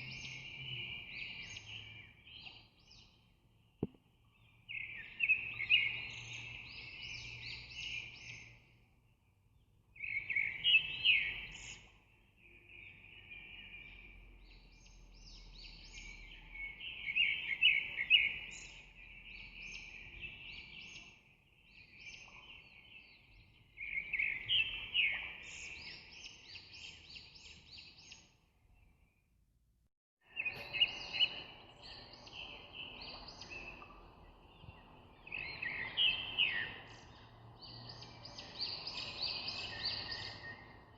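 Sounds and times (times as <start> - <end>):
birds chirping and singing: 30.3 - 40.9.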